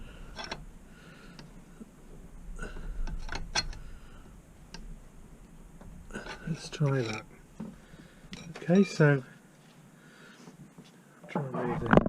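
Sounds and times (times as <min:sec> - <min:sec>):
light metallic clicks and scrapes: 0:00.3 - 0:00.7, 0:02.8 - 0:04.0, 0:06.2 - 0:09.3.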